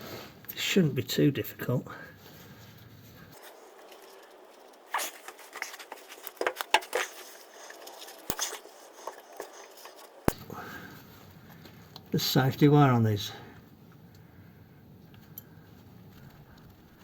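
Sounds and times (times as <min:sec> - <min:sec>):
hand tools clicking and scraping: 0:03.3 - 0:10.4.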